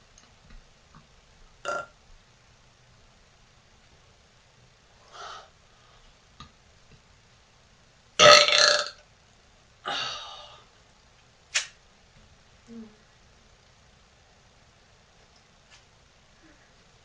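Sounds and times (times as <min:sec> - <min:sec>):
woman burping: 0:08.2 - 0:08.9.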